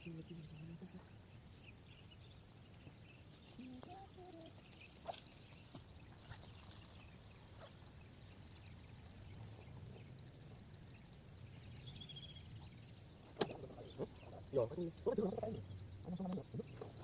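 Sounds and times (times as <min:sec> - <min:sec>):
high insect drone: 0:00.0 - 0:17.0.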